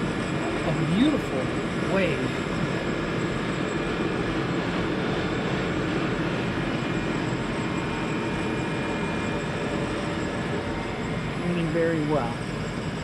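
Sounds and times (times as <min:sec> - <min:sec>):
faint steady tones: 0:00.0 - 0:13.0.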